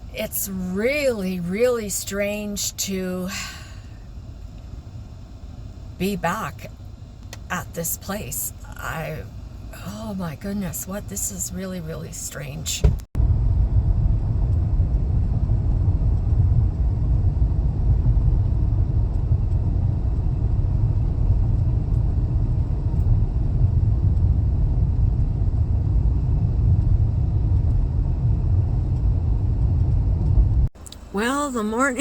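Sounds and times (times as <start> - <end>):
vehicle driving rumble: 0.0 - 32.0.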